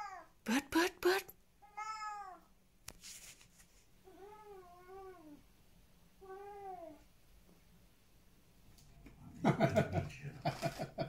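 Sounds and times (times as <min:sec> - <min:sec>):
cat meowing faintly: 0:01.6 - 0:02.5
brief rustle: 0:02.9 - 0:03.9.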